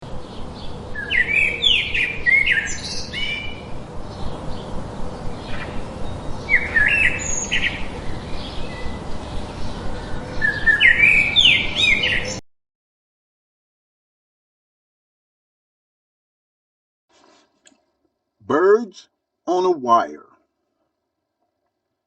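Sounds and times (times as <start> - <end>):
low background rumble: 0.0 - 12.1
songbird chirping: 0.1 - 12.4.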